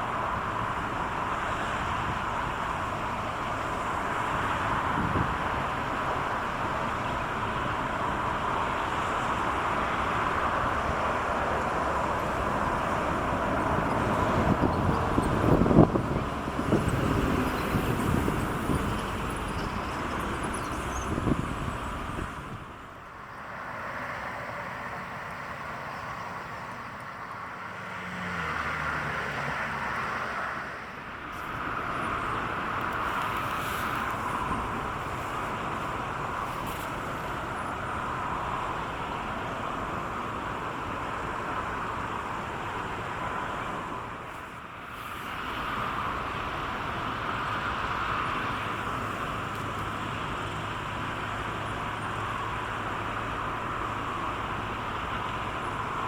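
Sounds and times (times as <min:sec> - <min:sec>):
wind buffeting microphone: 0:04.0 - 0:06.8, 0:10.2 - 0:22.9.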